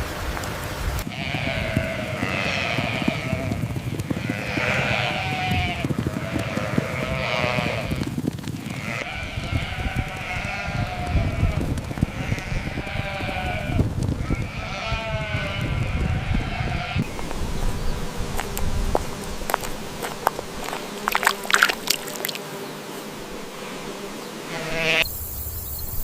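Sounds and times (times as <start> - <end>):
sheep bleating: 1.1 - 8.0, 8.6 - 17.1, 24.5 - 25.0.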